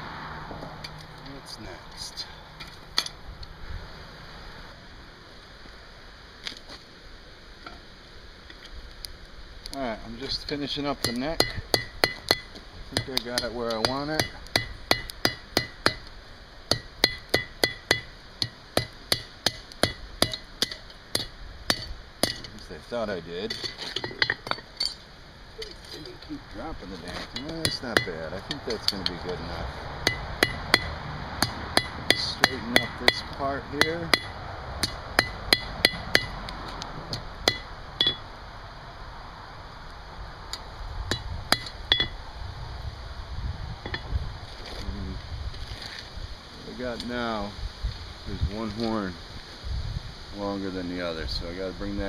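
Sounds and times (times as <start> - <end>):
hammer striking steel on anvil: 11.0 - 16.0, 16.7 - 22.5, 27.4 - 29.2, 30.0 - 36.4, 37.1 - 38.3.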